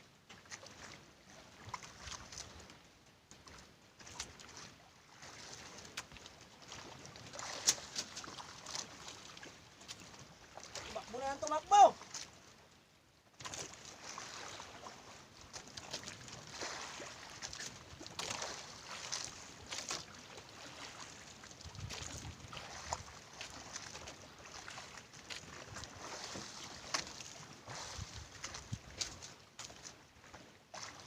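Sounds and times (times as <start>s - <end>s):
water splashing around boat: 0.0s - 31.0s
wind on microphone: 21.6s - 23.1s, 27.8s - 29.0s.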